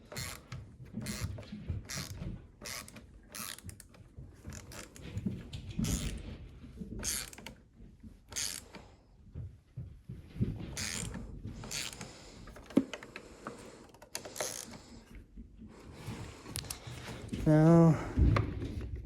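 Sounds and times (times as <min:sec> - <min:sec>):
hand ratchet clicking: 0:00.0 - 0:01.3, 0:01.9 - 0:05.0, 0:07.0 - 0:07.5, 0:08.3 - 0:08.8, 0:10.8 - 0:13.1, 0:13.8 - 0:14.8.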